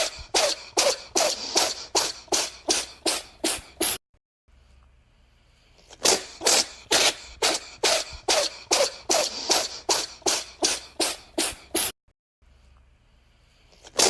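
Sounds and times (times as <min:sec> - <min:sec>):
cat sneezing: 0:00.0 - 0:04.0, 0:05.8 - 0:12.0, 0:13.8 - 0:14.0.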